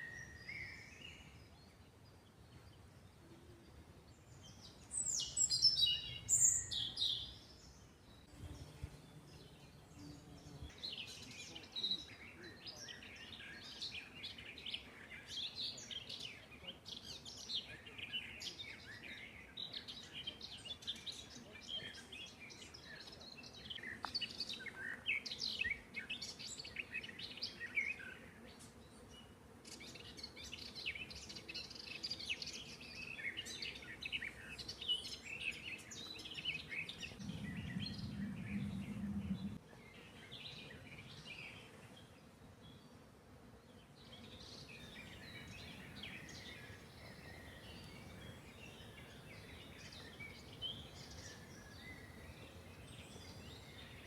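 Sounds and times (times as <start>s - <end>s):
songbirds singing and chirping: 0.0s - 54.0s
low rumble: 37.0s - 39.6s.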